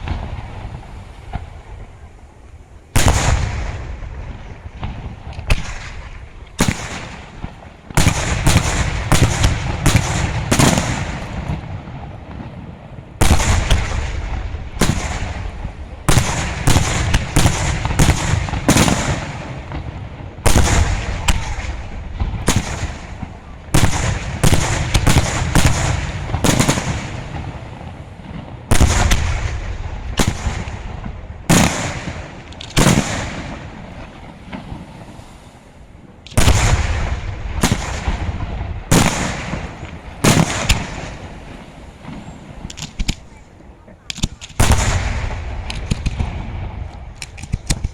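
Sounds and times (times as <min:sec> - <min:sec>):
fireworks shells bursting: 0:20.5 - 0:35.4, 0:36.2 - 0:43.4.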